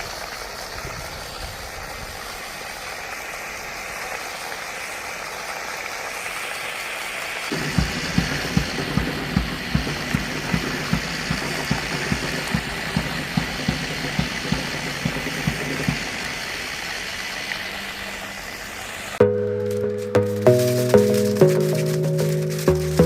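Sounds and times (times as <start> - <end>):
regular knocking: 7.5 - 16.5
music: 19.2 - 23.0.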